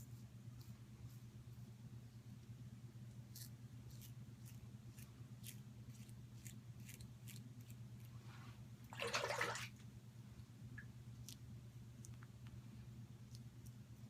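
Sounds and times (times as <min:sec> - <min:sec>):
razor scraping stubble: 0:03.3 - 0:08.2.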